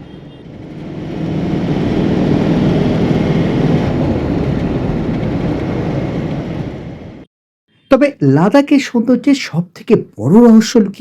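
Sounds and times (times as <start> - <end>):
road and wind noise: 0.0 - 8.0.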